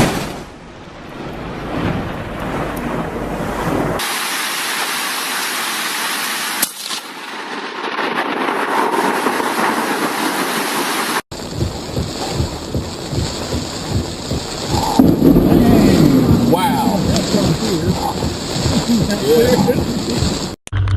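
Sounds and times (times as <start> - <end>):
low thunder rumble: 0.0 - 4.0, 11.3 - 20.6
heavy rain: 0.0 - 20.6
wind: 0.0 - 20.9
sharp thunder crack: 11.3 - 20.6.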